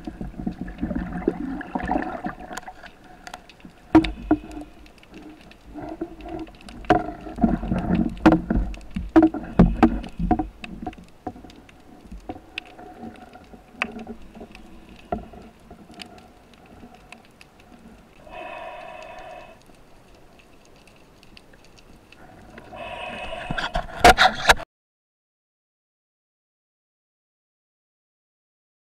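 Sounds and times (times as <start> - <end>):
underwater clicks and knocks: 0.0 - 17.8
underwater gurgling and rumble: 0.0 - 24.0.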